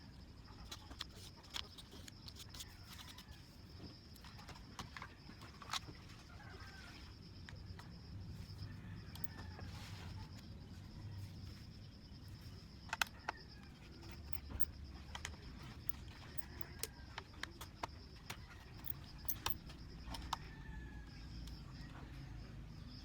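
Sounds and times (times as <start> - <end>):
light clicks and taps of screws: 14.0 - 20.4.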